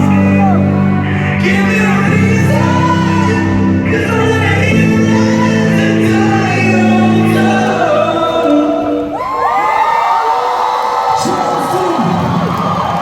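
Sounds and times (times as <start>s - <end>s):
person singing: 0.0s - 9.7s.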